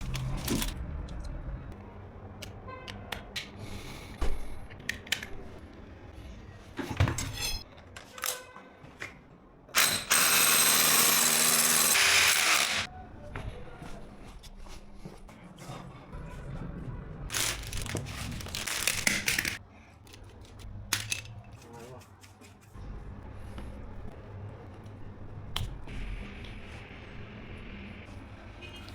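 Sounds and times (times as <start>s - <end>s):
power tool running: 9.8s - 12.9s.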